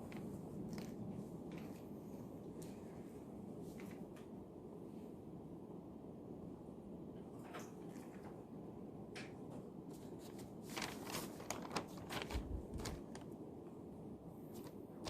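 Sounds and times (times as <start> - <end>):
steady room hum: 0.0 - 15.0
paper rustling: 9.9 - 13.4, 14.5 - 14.8.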